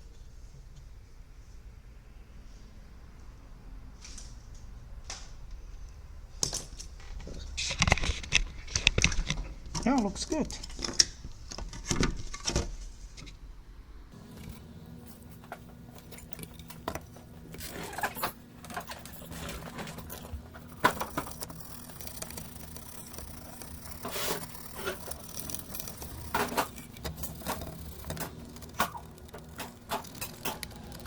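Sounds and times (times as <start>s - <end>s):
small metal parts clicking: 14.2s - 31.0s.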